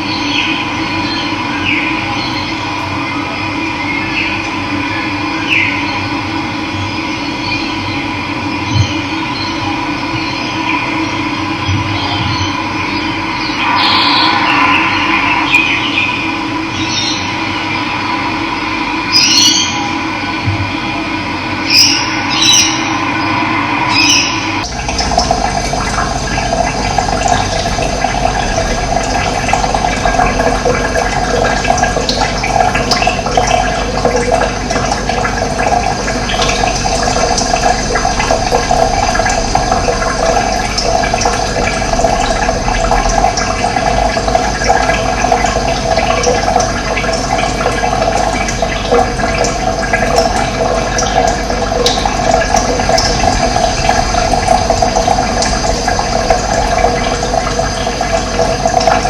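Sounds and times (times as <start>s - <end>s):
running water rushing: 12.0s - 19.9s, 21.6s - 59.0s.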